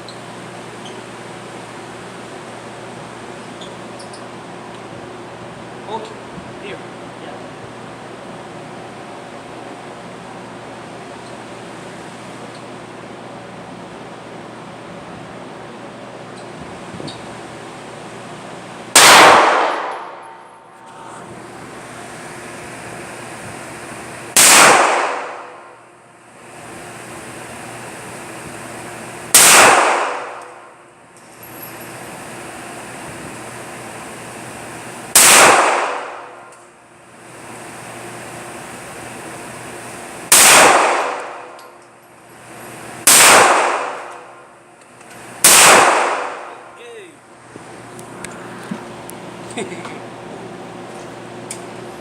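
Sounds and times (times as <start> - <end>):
gunshots echoing indoors: 18.9 - 20.5, 24.4 - 25.8, 29.4 - 30.7, 35.2 - 36.5, 40.3 - 41.6, 43.1 - 44.4, 45.4 - 46.8.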